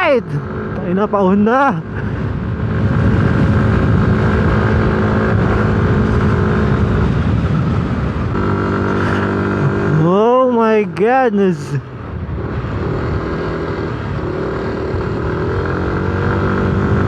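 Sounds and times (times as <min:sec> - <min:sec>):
wind noise: 0:00.0 - 0:17.0
scooter engine running: 0:08.3 - 0:10.8.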